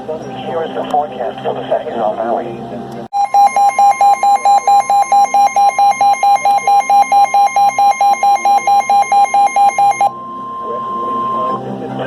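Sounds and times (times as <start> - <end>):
alert tone with pulsing lower tone: 3.2 - 12.0.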